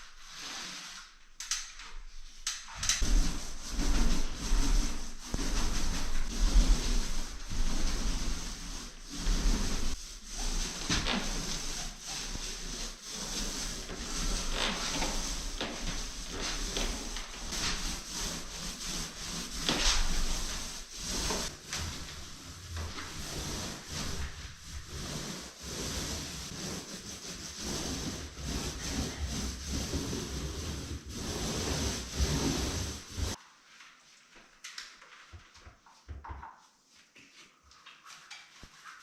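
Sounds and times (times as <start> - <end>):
rubbing and scraping on wood: 2.5 - 33.4.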